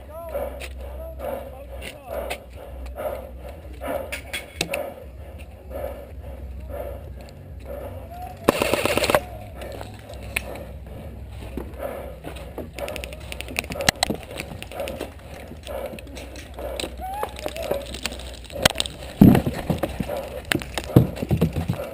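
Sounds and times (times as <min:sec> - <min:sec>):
airsoft rifle full-auto burst: 0:08.5 - 0:09.3.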